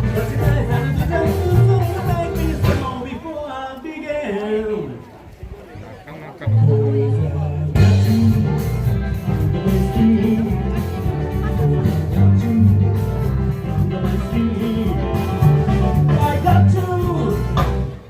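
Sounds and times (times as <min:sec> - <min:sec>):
guitar: 0:00.0 - 0:03.2, 0:06.4 - 0:18.0
held bass notes: 0:00.0 - 0:03.2, 0:06.4 - 0:18.0
regular beat: 0:00.0 - 0:03.2, 0:07.7 - 0:18.0.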